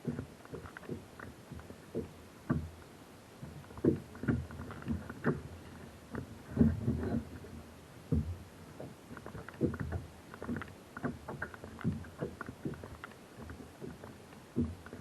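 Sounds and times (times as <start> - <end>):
hollow knocks on kayak hull: 0.0 - 2.8, 3.4 - 5.5, 6.1 - 15.0.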